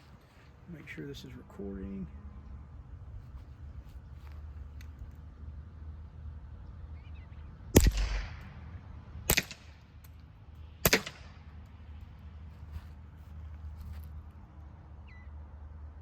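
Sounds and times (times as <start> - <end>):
suppressed pistol shots: 7.8 - 8.6, 9.3 - 9.8, 10.8 - 11.5.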